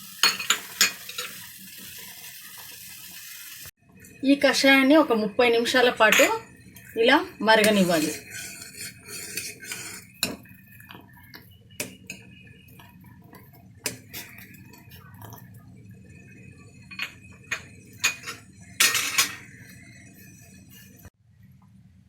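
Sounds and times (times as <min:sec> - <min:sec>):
metal pots and utensils clinking: 0:00.1 - 0:01.5, 0:05.5 - 0:15.5, 0:16.6 - 0:21.0.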